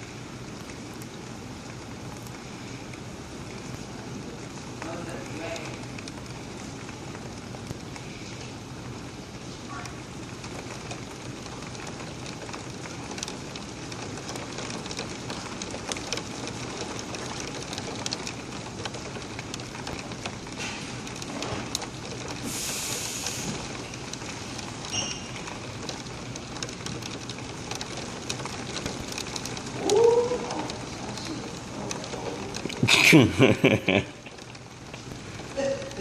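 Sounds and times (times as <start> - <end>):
steady rain falling: 0.0 - 36.0
brief high hiss: 22.4 - 23.6
drops ticking on surfaces: 23.5 - 36.0.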